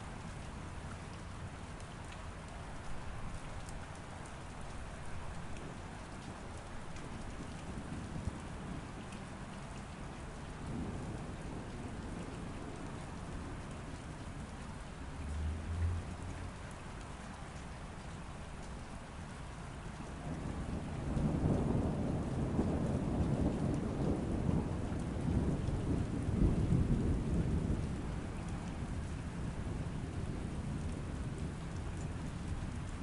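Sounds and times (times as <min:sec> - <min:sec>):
steady rain falling: 0:00.0 - 0:33.0
thunder rumbling: 0:10.6 - 0:13.7, 0:20.2 - 0:33.0.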